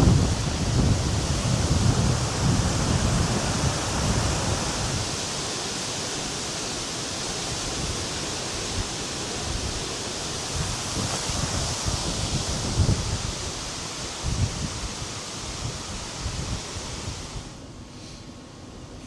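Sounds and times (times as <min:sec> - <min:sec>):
strong wind rushing: 0:00.0 - 0:17.6
wind buffeting on microphone: 0:00.0 - 0:17.6.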